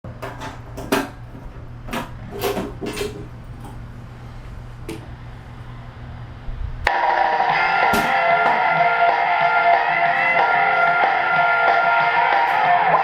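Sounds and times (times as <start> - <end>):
equipment clicks and knocks: 0.1 - 3.8
steady low hum: 0.1 - 12.2.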